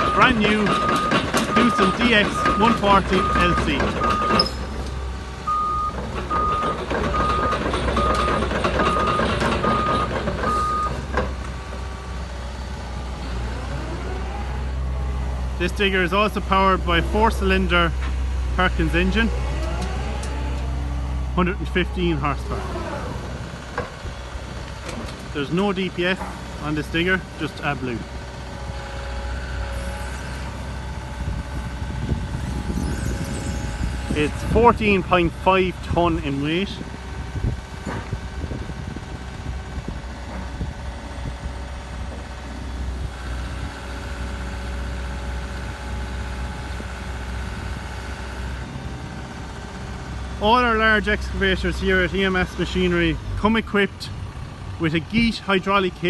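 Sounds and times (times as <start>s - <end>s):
excavator travel alarm beeping: 0.0s - 4.8s, 5.4s - 11.0s
diesel engine running: 0.0s - 56.0s.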